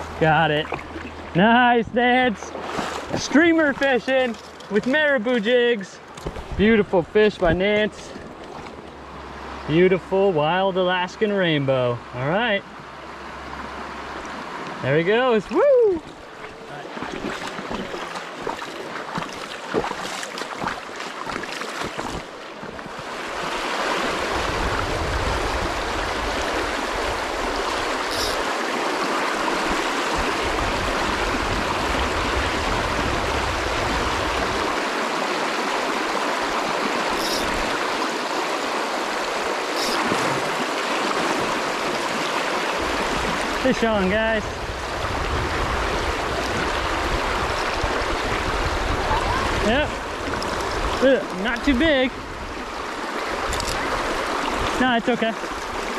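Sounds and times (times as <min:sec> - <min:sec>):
creek water rushing: 0:00.0 - 0:55.9.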